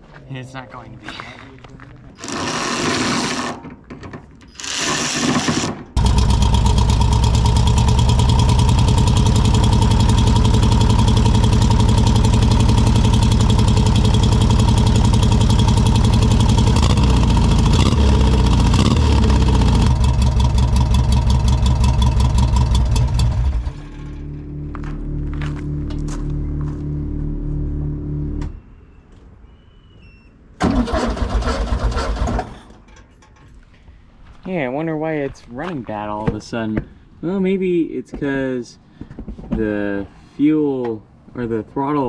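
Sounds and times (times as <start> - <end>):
car engine idling: 6.0 - 28.5
car engine starter cranking: 30.6 - 33.4.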